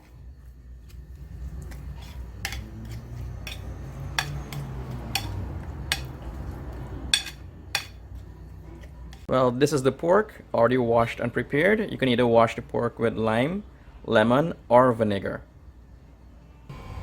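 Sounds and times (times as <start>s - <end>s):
spoon stirring in a bowl: 0.0s - 9.3s
spoon clinking against bowl: 2.0s - 6.2s, 7.1s - 8.0s.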